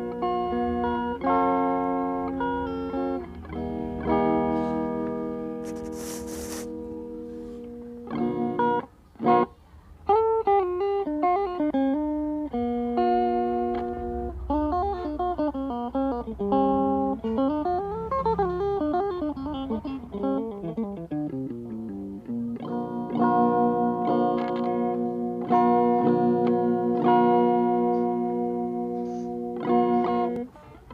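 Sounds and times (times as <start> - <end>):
electric guitar with delay: 10.8 - 30.4.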